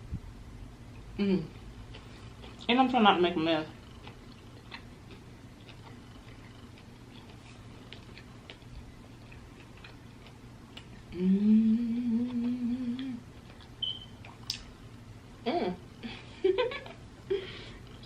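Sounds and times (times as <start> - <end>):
small eating clicks: 0.9 - 11.2, 12.0 - 15.0
woman humming: 1.2 - 1.6, 11.1 - 13.2, 15.4 - 16.2.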